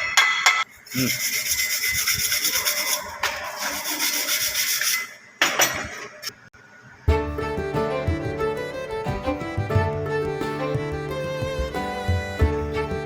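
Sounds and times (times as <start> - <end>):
background music with strings: 7.1 - 13.0.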